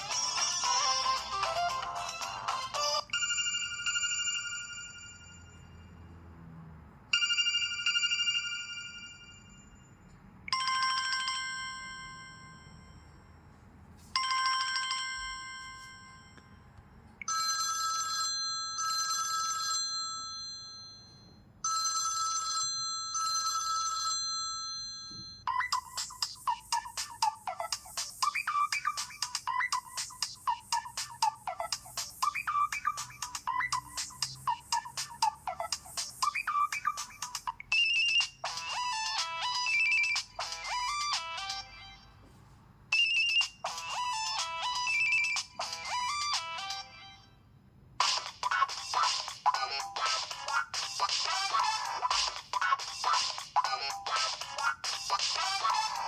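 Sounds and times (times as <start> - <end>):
phone ringtone chimes: 0.0 - 6.1, 7.1 - 13.1, 36.4 - 42.1
busy ringtone melody: 0.0 - 6.2, 7.1 - 13.4, 14.2 - 42.2, 42.9 - 47.4, 48.0 - 56.0.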